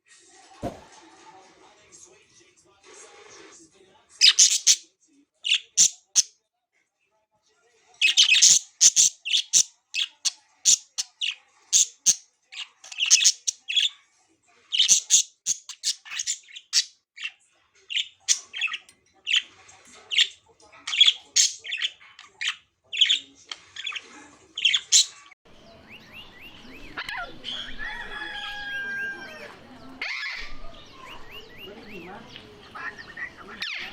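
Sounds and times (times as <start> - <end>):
budgerigar warbling chatter: 4.2 - 4.8, 8.0 - 13.9, 14.7 - 19.5, 20.1 - 33.9
budgerigars chirping: 4.2 - 4.8, 5.4 - 6.3, 8.0 - 13.9, 14.7 - 19.5, 20.1 - 29.4.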